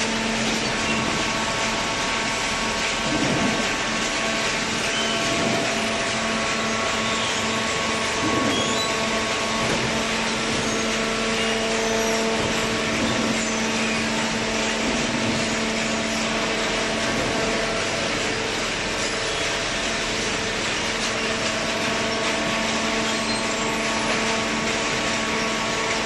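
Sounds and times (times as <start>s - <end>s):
machinery drone and whir: 0.0s - 26.0s.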